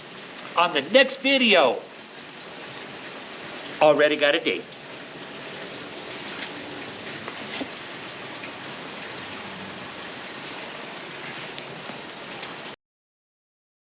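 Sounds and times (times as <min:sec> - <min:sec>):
steady outdoor hiss: 0:00.0 - 0:12.8.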